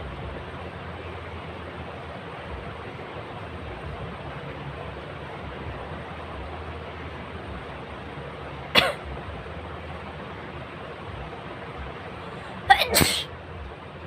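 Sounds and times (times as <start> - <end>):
person sneezing: 12.5 - 13.3.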